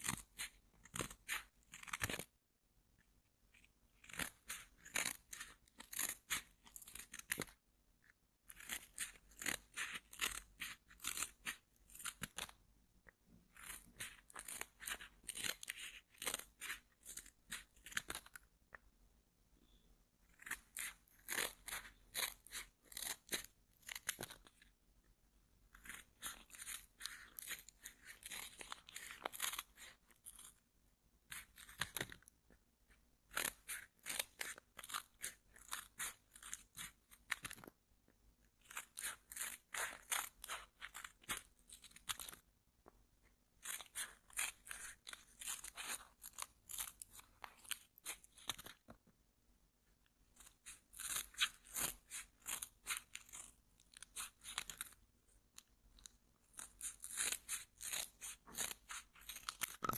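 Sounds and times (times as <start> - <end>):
packaging crackling and crinkling: 56.5 - 59.9.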